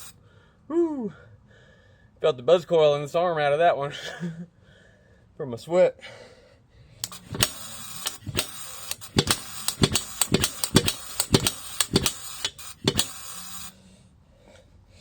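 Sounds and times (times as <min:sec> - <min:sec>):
jackhammer engine sputtering: 0:07.0 - 0:13.7.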